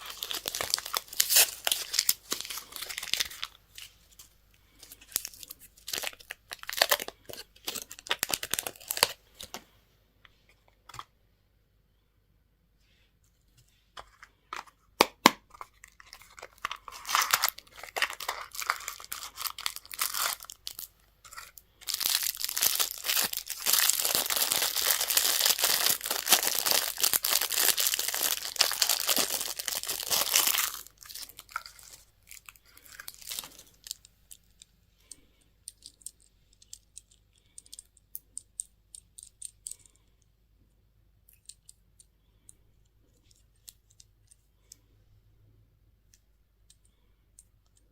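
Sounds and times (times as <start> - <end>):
packaging tearing: 0.0 - 3.5, 4.9 - 9.2, 15.8 - 34.0
packaging crinkling: 0.0 - 9.6, 15.5 - 34.6.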